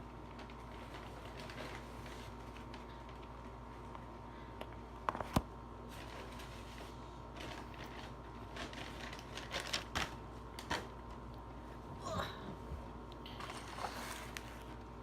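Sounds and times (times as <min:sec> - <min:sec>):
food packaging rustling: 0:00.2 - 0:03.9, 0:05.1 - 0:11.3, 0:13.3 - 0:15.0.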